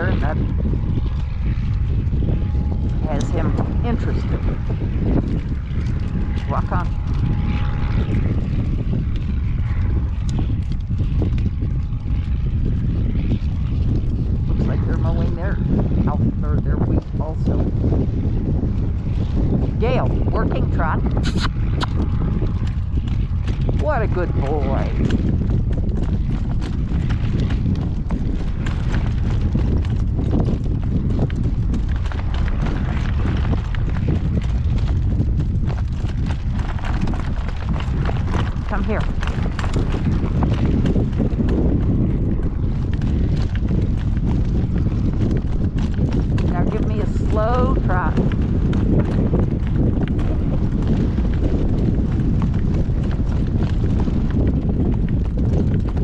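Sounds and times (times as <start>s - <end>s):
horse hooves clopping: 0.0s - 56.0s
strong wind buffeting microphone: 0.0s - 56.0s.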